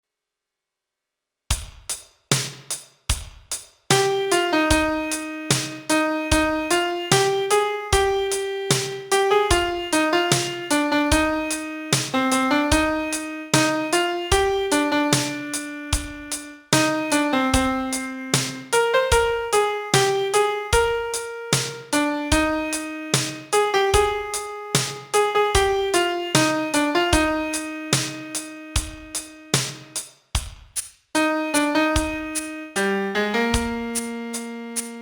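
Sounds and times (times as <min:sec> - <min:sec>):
slow piano ballad: 0:03.9 - 0:29.6.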